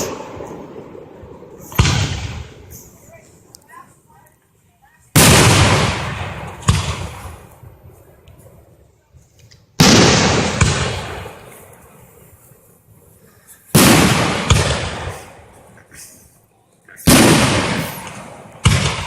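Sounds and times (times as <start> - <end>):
sharp firework crack: 0.0 - 3.1, 5.2 - 7.7, 9.8 - 11.8, 13.7 - 16.1, 17.0 - 19.0
fireworks bangs with rumbling echo: 0.0 - 3.2, 5.1 - 8.0, 9.8 - 11.8, 13.7 - 15.6, 17.0 - 19.0.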